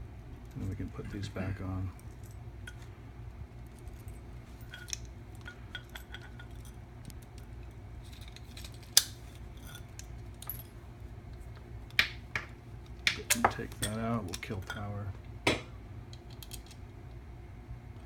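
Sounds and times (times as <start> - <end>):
low electrical hum: 0.0 - 18.0
clicks and metallic clinks: 3.7 - 10.8.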